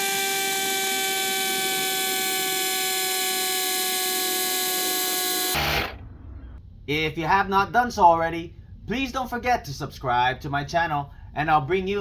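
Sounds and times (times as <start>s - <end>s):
air compressor whining: 0.0s - 6.3s.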